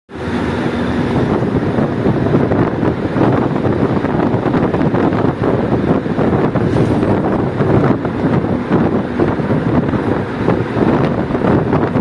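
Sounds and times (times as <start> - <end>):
wind buffeting microphone: 0.1 - 12.0.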